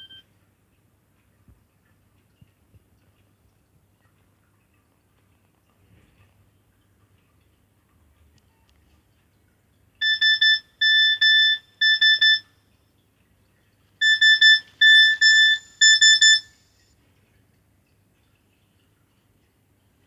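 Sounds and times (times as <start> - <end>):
phone ringtone warbling bleeps: 10.0 - 12.4, 14.0 - 16.5.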